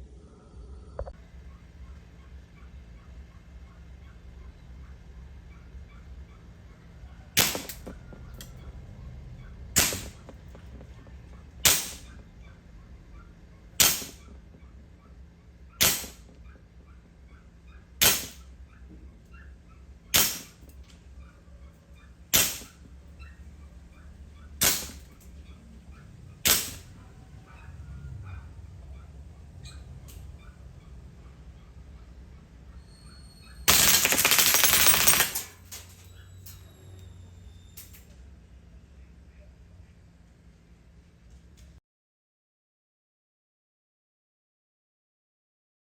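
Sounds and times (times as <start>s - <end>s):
airsoft rifle shots: 7.4s - 8.6s, 9.7s - 10.8s, 11.6s - 12.2s, 13.8s - 14.4s, 15.8s - 16.4s, 18.0s - 18.5s, 20.2s - 20.7s, 22.3s - 22.9s, 24.6s - 25.3s, 26.4s - 27.0s, 33.7s - 36.0s.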